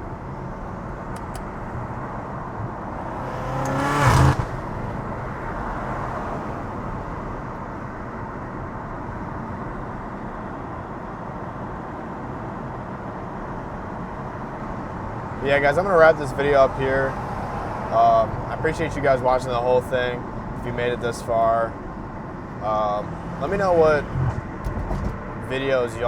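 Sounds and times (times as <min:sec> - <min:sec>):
engine and road noise: 0:00.0 - 0:26.0
car engine revving: 0:02.8 - 0:07.5, 0:22.5 - 0:25.7.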